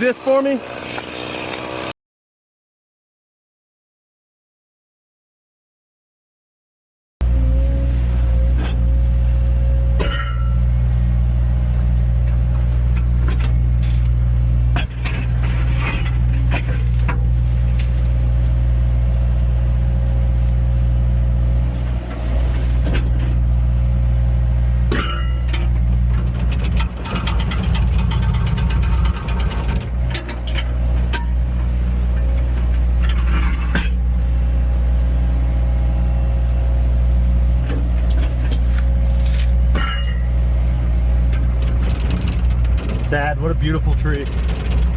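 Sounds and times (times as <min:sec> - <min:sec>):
heavy equipment engine humming: 0:07.2 - 0:44.9
knocks and clattering: 0:24.9 - 0:31.4, 0:41.3 - 0:44.9.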